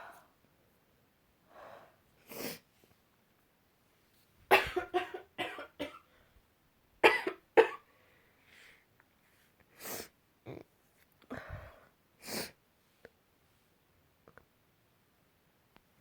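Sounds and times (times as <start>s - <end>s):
soft breaths: 1.4s - 3.1s, 7.9s - 10.2s, 11.0s - 13.8s
person coughing: 4.5s - 6.0s, 7.0s - 7.9s.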